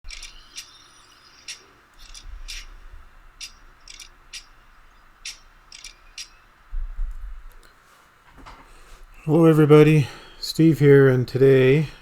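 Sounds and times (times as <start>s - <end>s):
small bird chirping: 0.1s - 2.8s, 3.4s - 6.5s.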